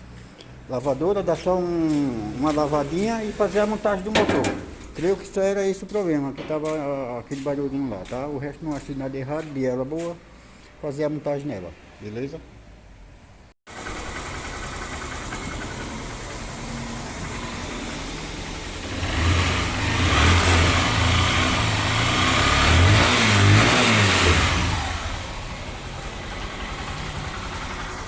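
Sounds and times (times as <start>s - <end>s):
motorcycle engine idling and revving: 13.7s - 28.0s.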